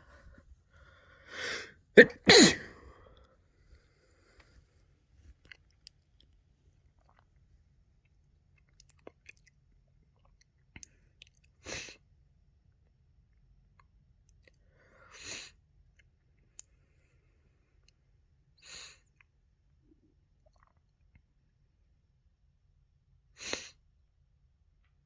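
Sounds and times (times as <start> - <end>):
drawn-in breath: 0.8 - 2.7
person sneezing: 1.3 - 3.0.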